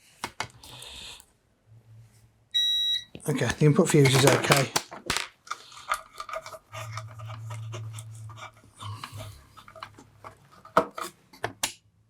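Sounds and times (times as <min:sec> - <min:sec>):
handling noises: 0:03.1 - 0:11.7.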